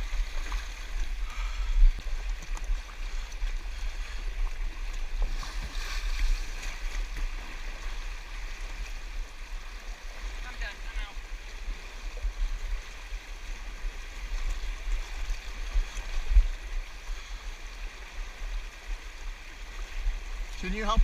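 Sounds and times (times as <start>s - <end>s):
low microphone rumble: 0.0s - 10.0s
river water rushing: 0.0s - 21.0s.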